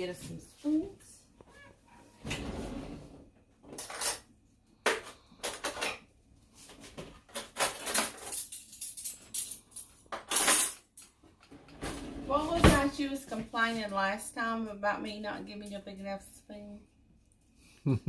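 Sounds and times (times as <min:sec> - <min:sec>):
spoons rattling: 0:07.4 - 0:11.1.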